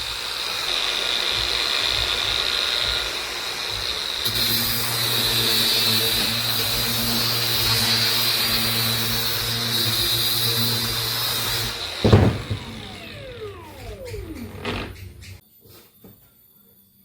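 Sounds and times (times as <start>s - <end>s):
electric power tool running: 0.0s - 15.0s
motor winding down whine: 11.2s - 15.4s
loud knock: 12.0s - 13.0s.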